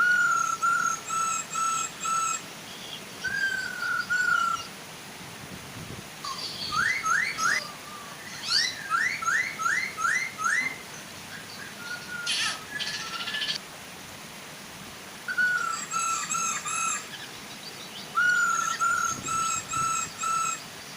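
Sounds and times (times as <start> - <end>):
bird whistling song: 0.0 - 4.7, 6.2 - 13.6, 15.3 - 20.6
bird chattering call: 6.3 - 7.8, 8.4 - 13.6, 15.4 - 17.1, 18.2 - 20.6.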